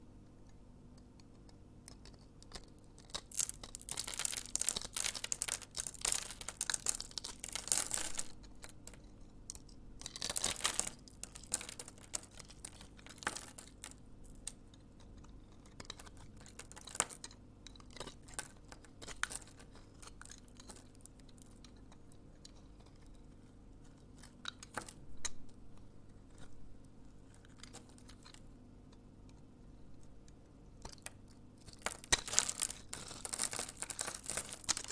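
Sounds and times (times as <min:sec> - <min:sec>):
knife crunching through soap: 0:01.8 - 0:25.4, 0:30.8 - 0:34.9.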